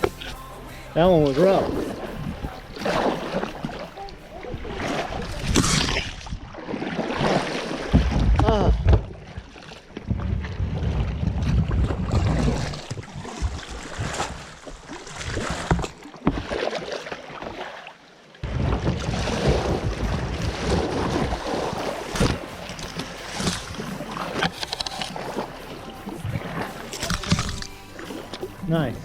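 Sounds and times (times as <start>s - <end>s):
water splashing around hull: 0.0s - 29.0s
paddle strokes and knocks: 1.2s - 29.0s
wind buffeting microphone: 1.6s - 6.6s, 10.0s - 14.6s, 18.4s - 22.5s.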